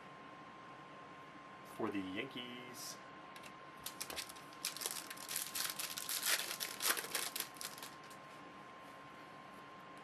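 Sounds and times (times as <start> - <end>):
card pack wrapper crinkling: 3.8 - 8.2.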